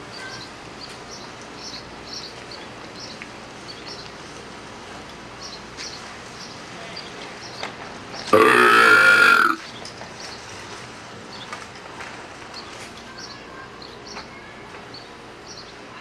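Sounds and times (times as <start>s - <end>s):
loud burp through speakers: 8.3s - 9.6s.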